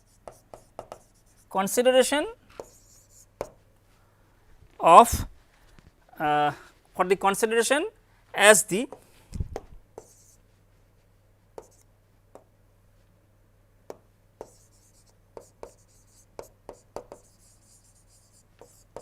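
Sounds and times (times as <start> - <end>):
pen writing on paper: 0.0 - 1.4, 2.6 - 3.5, 10.0 - 10.4, 11.6 - 11.8, 14.4 - 19.0.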